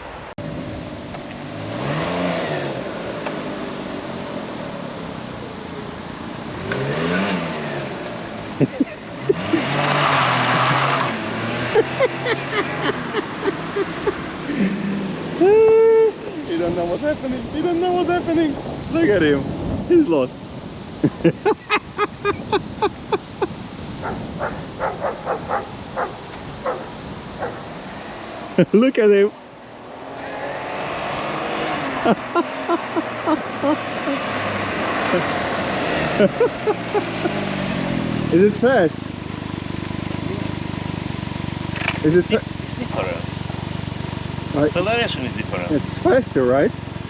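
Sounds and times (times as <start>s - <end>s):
rush of noise: 0.0s - 38.9s
trike engine revving: 0.4s - 19.6s, 20.8s - 47.0s
dog barking: 24.0s - 27.6s.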